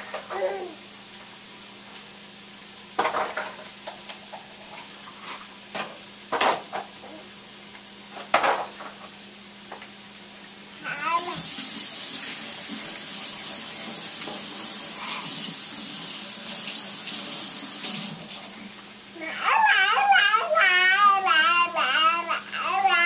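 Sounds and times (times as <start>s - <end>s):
steady hiss: 9.3s - 19.3s.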